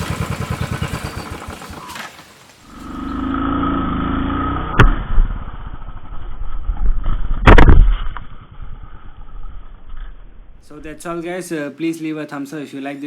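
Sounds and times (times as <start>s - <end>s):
motorcycle engine running: 0.0s - 2.2s.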